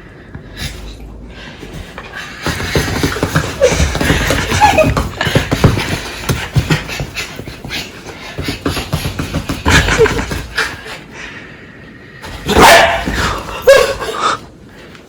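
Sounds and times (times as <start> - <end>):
person panting like a dog: 0.3 - 12.4
person yelping: 12.5 - 14.2.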